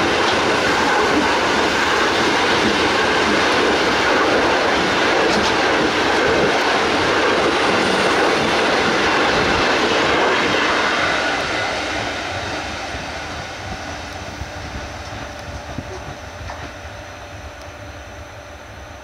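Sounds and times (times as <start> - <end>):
train rolling past rumble: 0.0 - 19.0.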